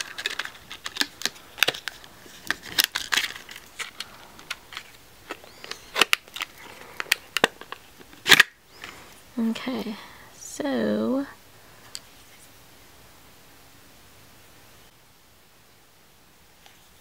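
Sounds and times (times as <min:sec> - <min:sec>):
packaging clicks and taps: 0:00.0 - 0:09.0
packaging rustling: 0:00.0 - 0:09.0.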